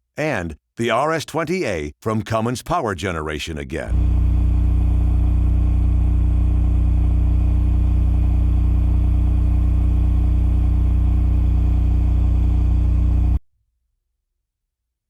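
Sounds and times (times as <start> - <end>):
generator engine hum: 3.9 - 13.4.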